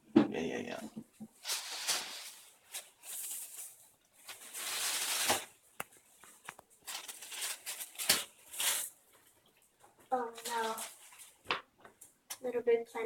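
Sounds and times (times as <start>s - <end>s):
wrapping paper rustling and tearing: 1.4s - 9.4s, 10.1s - 11.6s.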